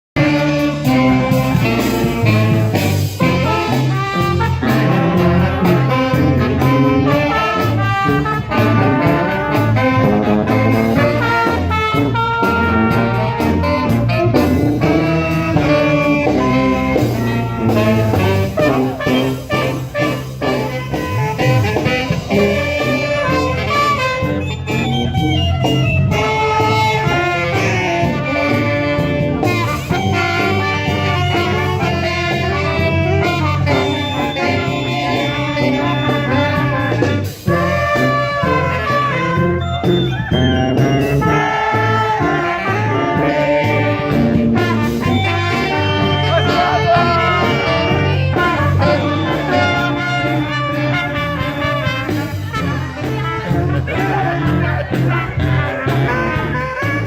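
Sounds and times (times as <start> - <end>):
band playing lively brass tune: 0.2 - 57.0.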